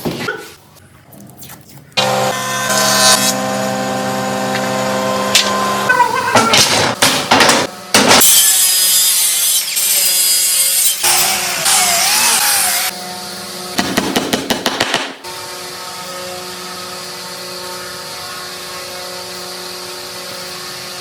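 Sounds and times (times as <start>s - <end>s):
wood being sawn: 2.0s - 6.7s.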